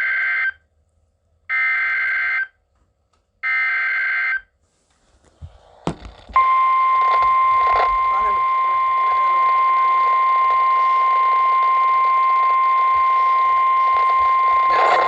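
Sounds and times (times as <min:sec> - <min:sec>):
steady warning alarm tone: 0:06.4 - 0:15.0.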